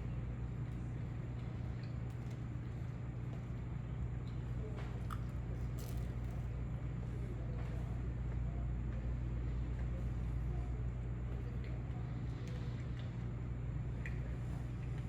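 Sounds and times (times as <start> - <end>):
small crunches and clicks: 4.8 - 6.5
person chewing and biting food: 5.0 - 6.0.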